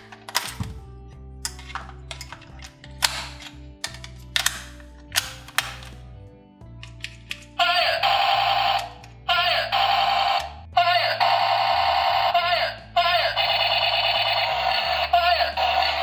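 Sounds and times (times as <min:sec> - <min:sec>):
low background music: 0:00.0 - 0:16.0
toy gun siren-like buzz: 0:07.9 - 0:09.0, 0:09.6 - 0:16.0.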